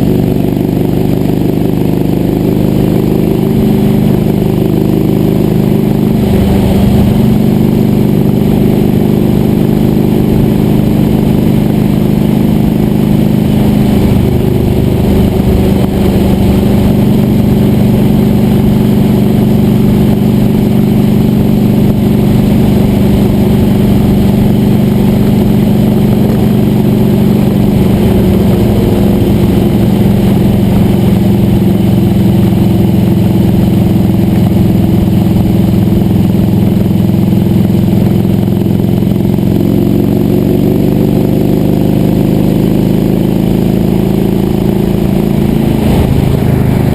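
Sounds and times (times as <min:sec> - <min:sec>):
sawmill engine running: 0:05.6 - 0:07.5, 0:12.7 - 0:36.3, 0:43.9 - 0:46.9.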